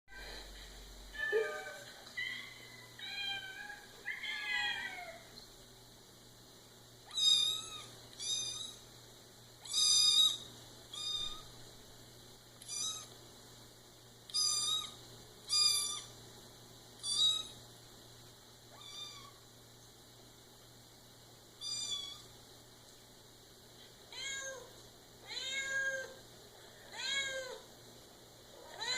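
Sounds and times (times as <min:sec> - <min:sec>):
cat meowing: 0:03.0 - 0:05.3, 0:07.1 - 0:08.8, 0:18.7 - 0:19.4.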